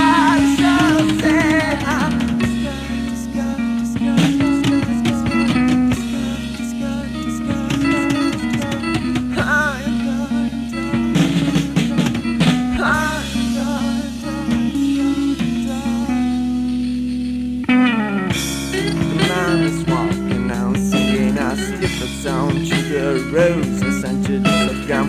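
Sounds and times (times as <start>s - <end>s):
drum hits: 0.0s - 3.1s, 3.8s - 6.8s, 7.5s - 9.8s, 11.0s - 15.7s, 18.3s - 25.0s
rock band music: 0.0s - 25.0s.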